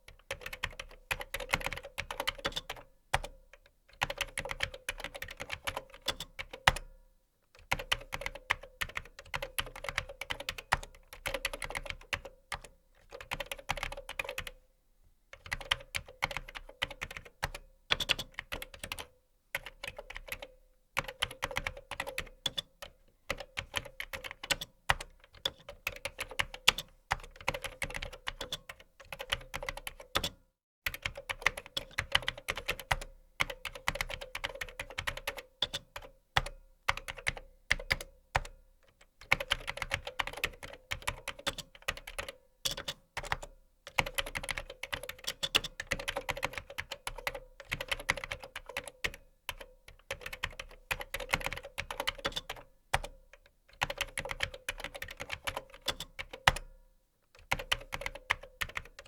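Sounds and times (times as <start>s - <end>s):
computer keyboard typing: 0.1s - 3.4s, 4.0s - 6.8s, 7.6s - 14.6s, 15.4s - 56.7s, 57.4s - 59.0s.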